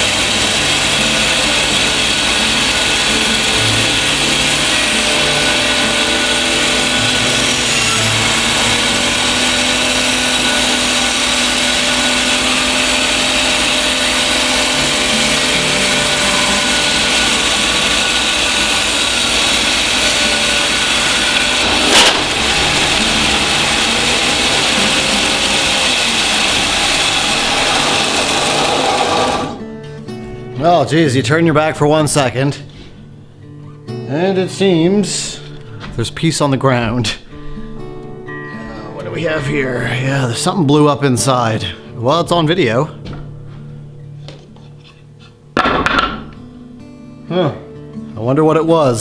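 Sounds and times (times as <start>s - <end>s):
bandsaw motor and blade: 0.0s - 29.7s
sharp bang: 20.7s - 29.6s.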